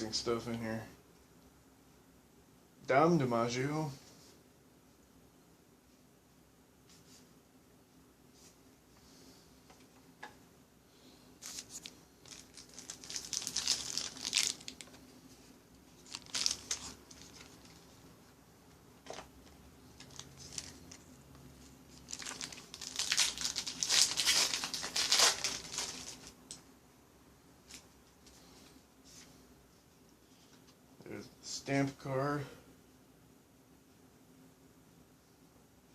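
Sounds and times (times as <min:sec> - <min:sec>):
card pack wrapper crinkling: 0:11.4 - 0:15.0, 0:16.0 - 0:17.8, 0:20.0 - 0:21.1, 0:21.9 - 0:26.5.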